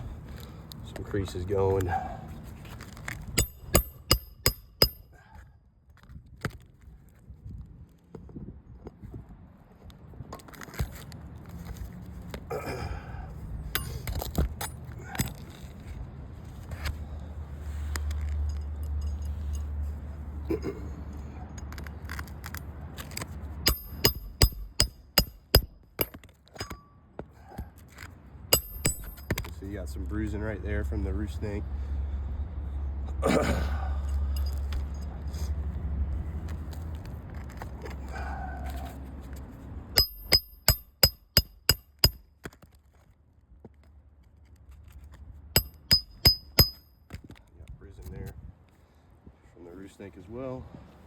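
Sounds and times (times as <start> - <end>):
hammer striking metal: 3.4 - 5.2, 23.6 - 27.0, 28.5 - 29.5, 40.0 - 42.2, 45.6 - 47.0
hand tool tapping metal: 3.4 - 5.2, 13.8 - 14.3, 23.6 - 26.9, 28.5 - 29.5, 34.3 - 35.0, 40.0 - 42.2, 45.6 - 47.0
wind rumbling on microphone: 6.1 - 10.4.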